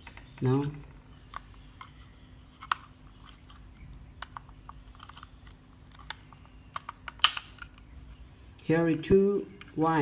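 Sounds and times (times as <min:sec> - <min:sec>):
plastic clicks and taps: 0:02.6 - 0:07.9.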